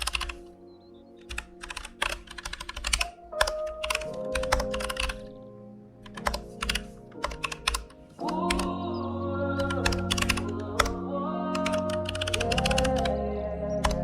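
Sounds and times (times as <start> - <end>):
typing on computer keyboard: 0.0 - 0.4, 1.2 - 5.3, 6.0 - 8.8, 9.6 - 13.2, 13.8 - 14.0
background music: 0.0 - 14.0.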